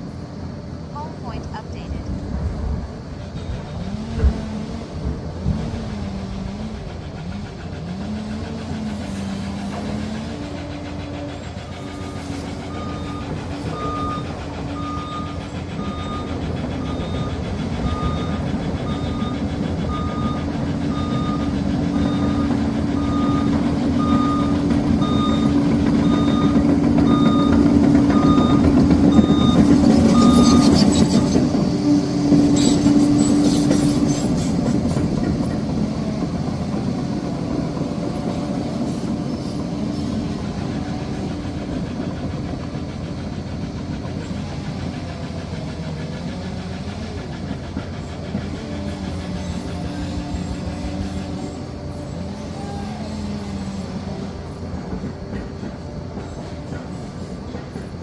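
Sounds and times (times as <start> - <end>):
diesel engine running: 0.0 - 58.0
tracks clanking: 0.0 - 58.0
reversing alarm beeping: 11.6 - 31.6.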